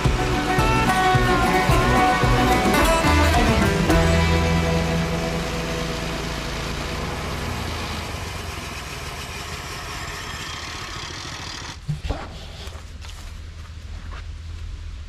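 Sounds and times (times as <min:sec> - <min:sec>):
music: 0:00.0 - 0:07.2
small gasoline engine idling: 0:00.0 - 0:11.9.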